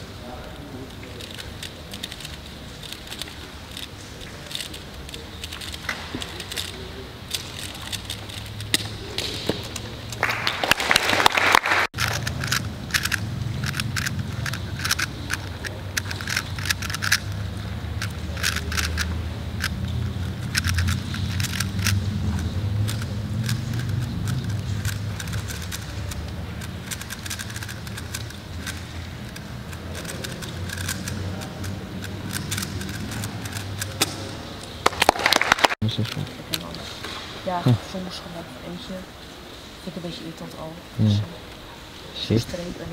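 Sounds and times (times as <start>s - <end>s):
puzzle cube plastic clicks: 1.1s - 10.3s, 12.0s - 36.7s.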